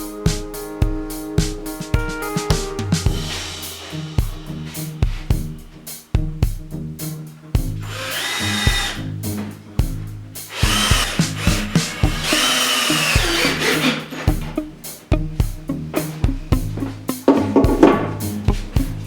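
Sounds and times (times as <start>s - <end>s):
music with drum beat: 0.0s - 19.0s
power drill bursts: 7.8s - 9.1s, 10.5s - 14.3s.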